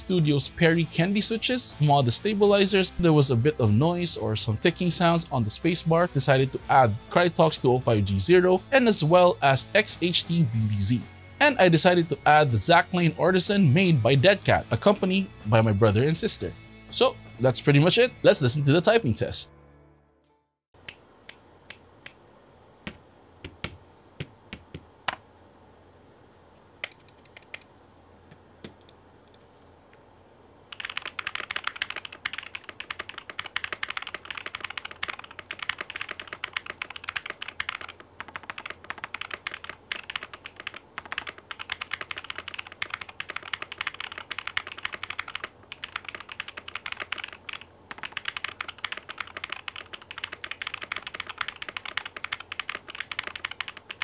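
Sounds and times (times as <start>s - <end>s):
mechanical keyboard typing: 30.7s - 54.0s.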